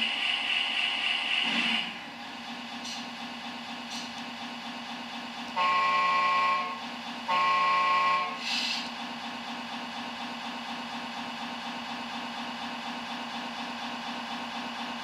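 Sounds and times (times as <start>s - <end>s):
simulated diesel engine idling: 0.0s - 15.0s
truck horn blasts: 5.6s - 8.5s
brief hiss: 8.4s - 8.9s.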